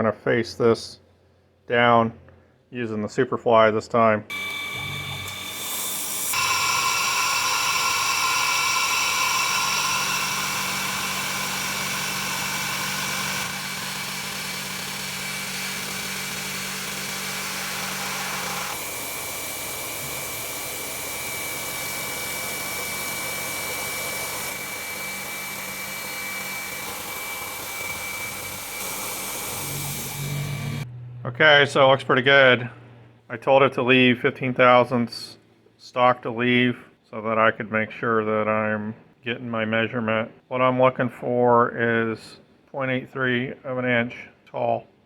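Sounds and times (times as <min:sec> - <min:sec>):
cutter hissing on metal: 0:04.3 - 0:30.8
milling spindle whine: 0:04.3 - 0:30.8.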